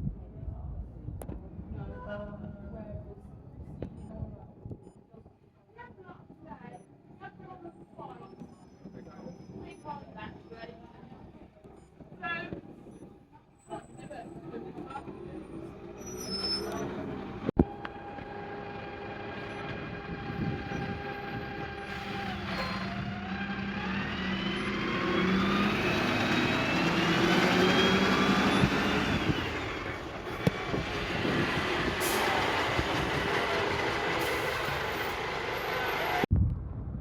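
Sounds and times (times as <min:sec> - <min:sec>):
heavy diesel vehicle running: 0:08.6 - 0:36.3
engine whine: 0:16.7 - 0:36.3.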